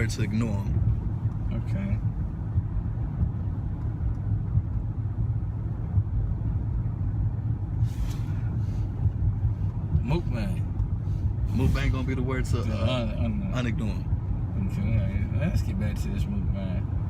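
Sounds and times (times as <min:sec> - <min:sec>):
car engine rumble inside cabin: 0:00.0 - 0:17.0
soft hissing: 0:07.8 - 0:09.8.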